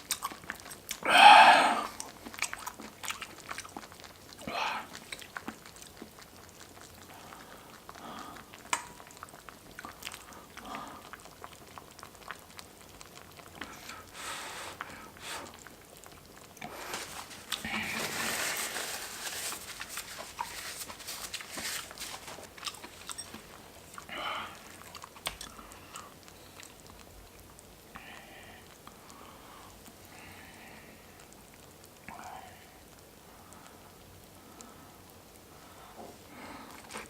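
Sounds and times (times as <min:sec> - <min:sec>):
person chewing: 0:00.0 - 0:14.1, 0:14.8 - 0:28.2, 0:36.6 - 0:37.0
person slurping soup: 0:16.6 - 0:26.2.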